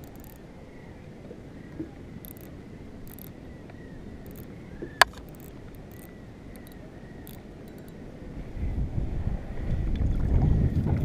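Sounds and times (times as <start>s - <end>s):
faint high ticks: 0.0s - 0.4s, 1.7s - 8.0s
sharp click: 0.0s - 0.4s, 2.2s - 2.5s, 3.1s - 3.4s, 4.3s - 8.0s.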